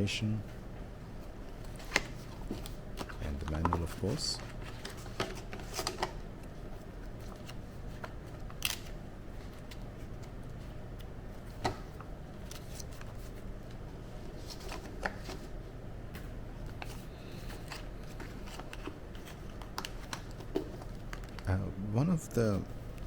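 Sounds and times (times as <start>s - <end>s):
low room hum: 0.0s - 23.0s
paper and packaging rustling: 1.6s - 10.5s, 16.6s - 21.6s.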